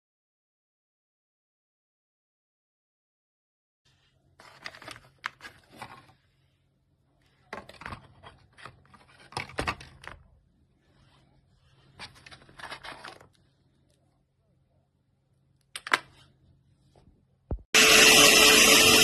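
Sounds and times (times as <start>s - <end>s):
rustling and scraping: 3.9s - 14.0s.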